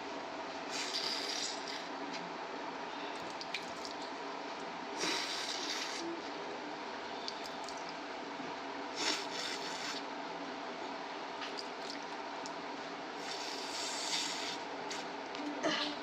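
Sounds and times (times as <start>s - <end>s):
steady hum: 0.0s - 16.0s
nasal rushes from congested nose: 13.2s - 15.1s.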